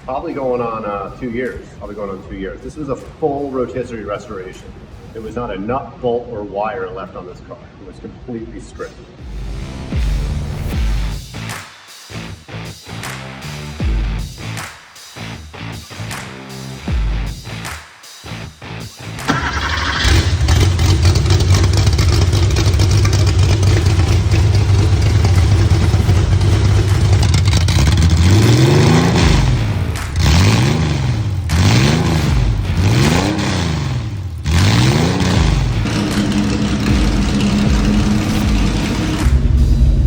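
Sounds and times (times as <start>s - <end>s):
car engine starting: 18.8s - 40.0s
engine revving: 18.8s - 40.0s
car engine idling loudly: 19.3s - 40.0s.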